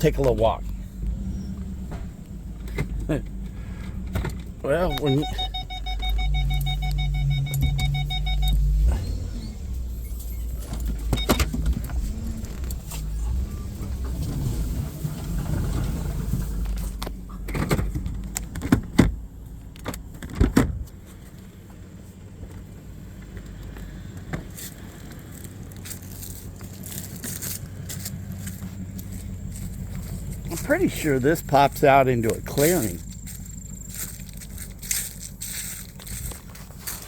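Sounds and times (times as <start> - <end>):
vehicle engine running: 0.0 - 37.0
steady electronic beep: 4.7 - 8.8.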